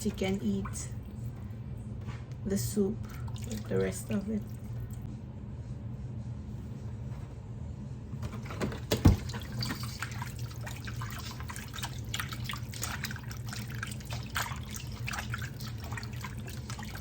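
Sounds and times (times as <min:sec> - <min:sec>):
water splashing and sloshing: 0:00.0 - 0:02.4, 0:03.0 - 0:05.1, 0:08.2 - 0:17.0.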